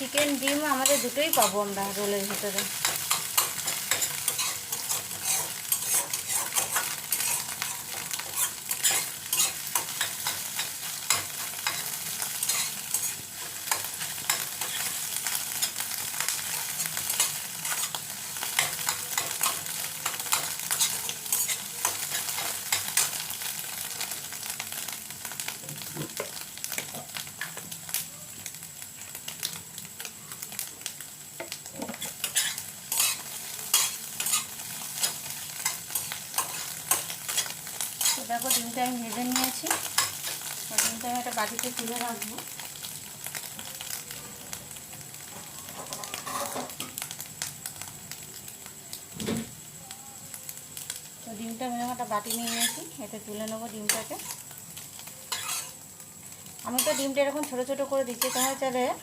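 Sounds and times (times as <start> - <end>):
eggs sizzling in hot oil: 0.0 - 59.0
spatula clicking and scraping: 2.7 - 15.0.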